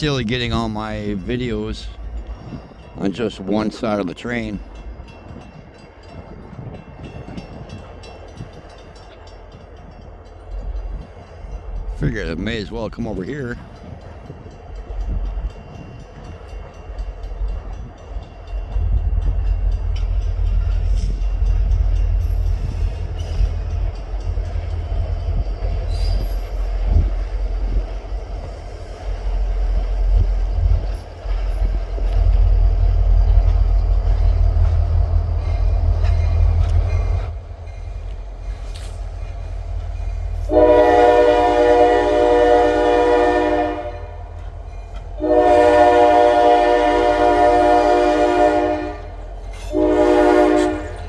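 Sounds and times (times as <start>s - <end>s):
freight train rumbling past: 0.0s - 51.0s
locomotive air horn blasts: 40.5s - 44.3s, 45.2s - 51.0s.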